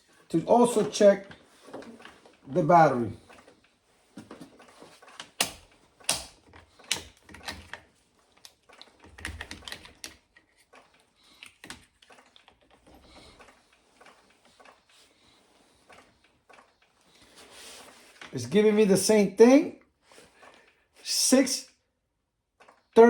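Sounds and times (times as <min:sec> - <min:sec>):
battery tester clicks and knocks: 0:05.2 - 0:07.8.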